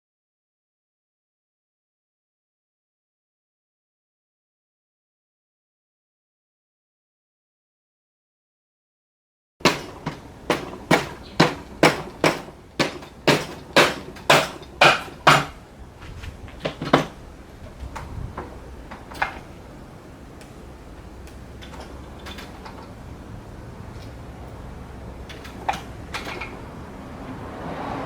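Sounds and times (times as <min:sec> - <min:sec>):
sharp knocks: 0:09.6 - 0:15.6.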